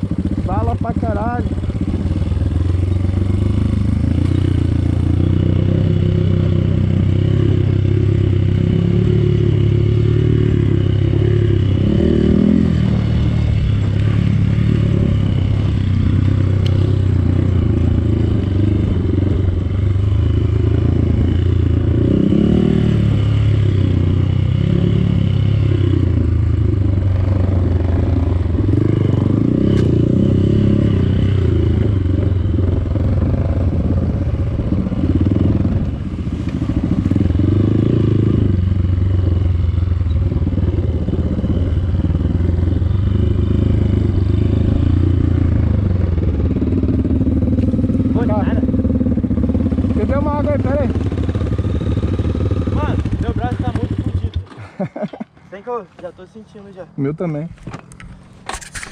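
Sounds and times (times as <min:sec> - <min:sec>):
dirt bike engine revving: 0:00.0 - 0:55.0, 0:58.4 - 0:58.9
bike rattling and scraping: 0:57.3 - 0:58.9.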